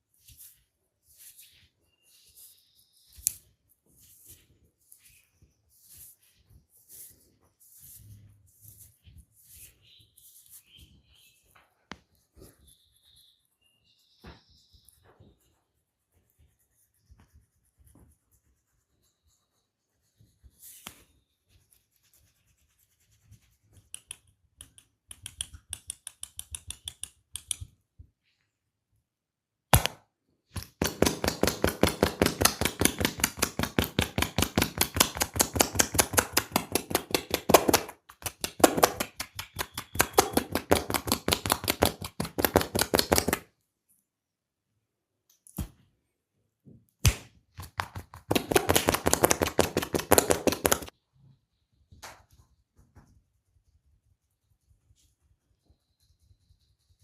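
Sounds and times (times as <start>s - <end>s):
hands tapping in massage: 30.6s - 43.5s, 47.0s - 50.9s
sharp slap: 47.0s - 47.3s.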